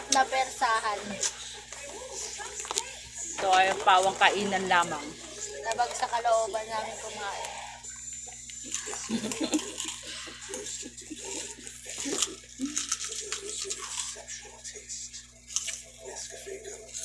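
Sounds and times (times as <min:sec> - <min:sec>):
people chewing: 0:00.0 - 0:17.0
low chuckles: 0:08.9 - 0:12.8.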